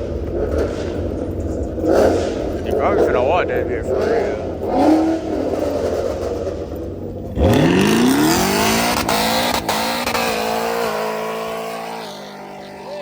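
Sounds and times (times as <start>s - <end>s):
car engine revving hard: 0.0s - 13.0s.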